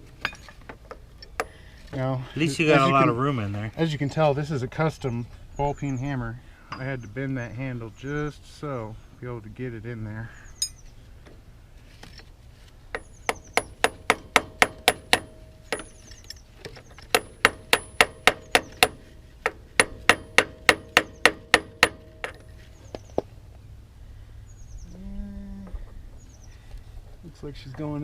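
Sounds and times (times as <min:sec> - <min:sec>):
hammer tapping on metal: 0:13.0 - 0:16.0, 0:17.1 - 0:22.4.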